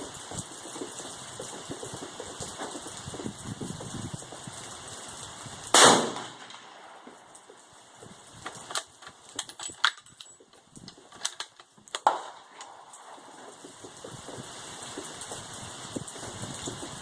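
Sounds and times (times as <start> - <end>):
rifle metallic clicks and clacks: 8.4 - 13.1.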